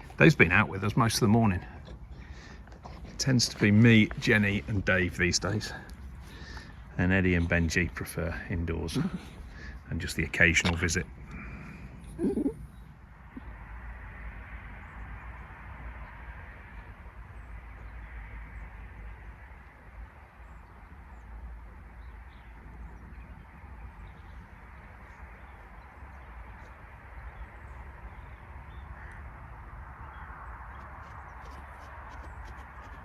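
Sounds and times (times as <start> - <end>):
outdoor background noise: 0.0 - 33.0
crows cawing: 28.7 - 30.8.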